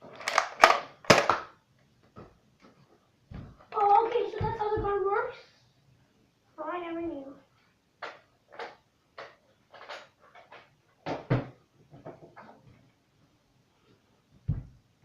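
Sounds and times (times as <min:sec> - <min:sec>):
toy blaster plastic clicks: 0:00.2 - 0:01.4
dull thump: 0:14.4 - 0:14.8.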